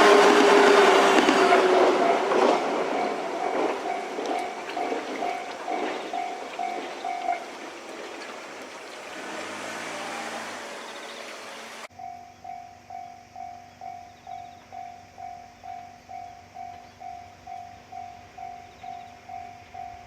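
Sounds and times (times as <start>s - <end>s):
level crossing warning bell ringing: 0.0s - 8.1s
train wheel and motor noise: 0.0s - 11.9s
electric train passing: 0.0s - 20.0s.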